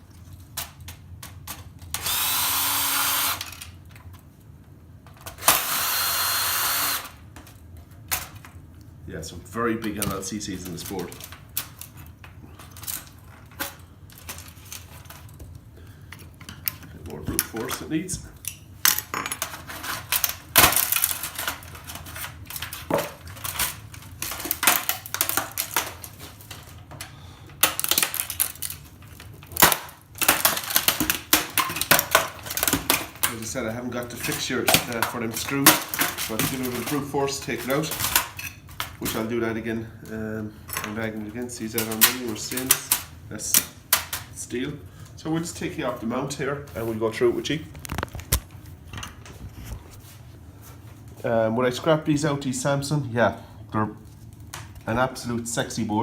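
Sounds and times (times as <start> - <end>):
power drill-driver running: 2.0 - 3.7, 5.4 - 7.2.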